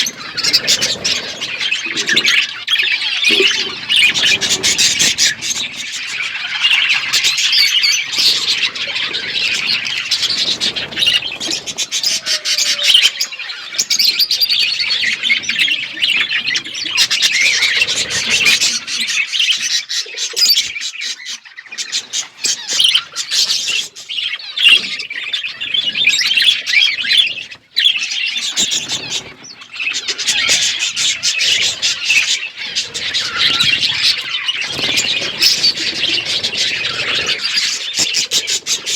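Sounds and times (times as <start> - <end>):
budgerigars chattering: 0.0 - 38.9.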